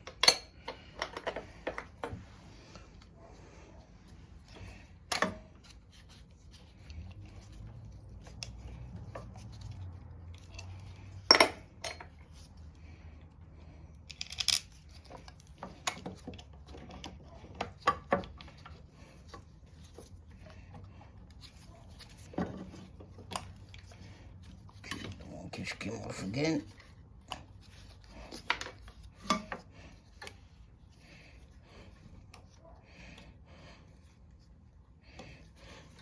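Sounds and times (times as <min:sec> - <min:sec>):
metal parts and tools clinking: 0:10.4 - 0:12.2, 0:14.0 - 0:16.1.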